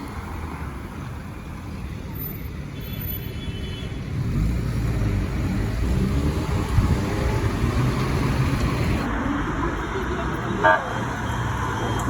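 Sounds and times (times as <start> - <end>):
road noise: 0.0 - 12.0
car engine accelerating: 4.1 - 9.1.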